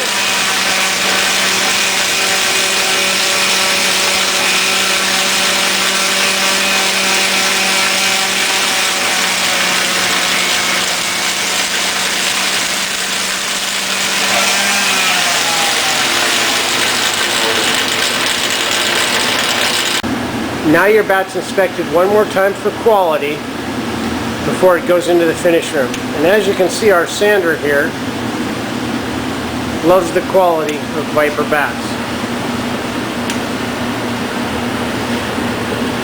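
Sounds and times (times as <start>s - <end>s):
power tool motor hum: 0.0s - 20.0s.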